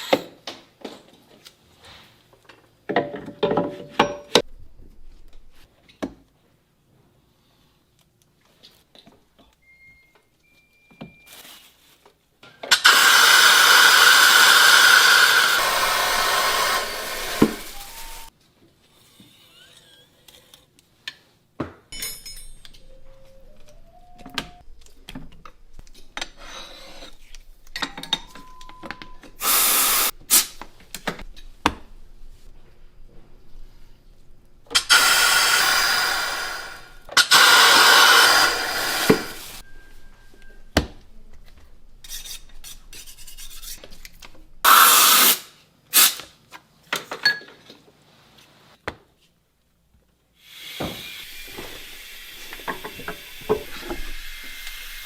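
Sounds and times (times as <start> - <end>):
small power tool running: 12.7 - 18.3, 29.4 - 30.1, 34.7 - 39.6, 50.4 - 55.0
ocarina whistling notes: 17.6 - 18.3, 22.8 - 24.6, 39.6 - 40.8.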